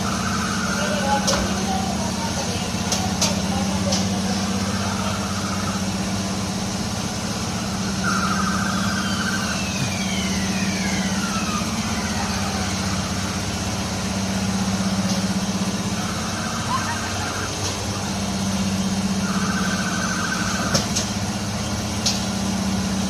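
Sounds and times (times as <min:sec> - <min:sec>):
ride machinery humming: 0:00.0 - 0:23.0
faint falling whistles: 0:07.6 - 0:13.5.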